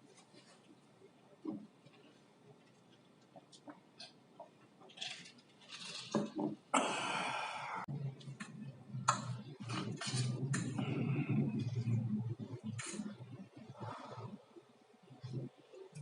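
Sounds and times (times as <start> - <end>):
low hum: 7.0 - 16.0.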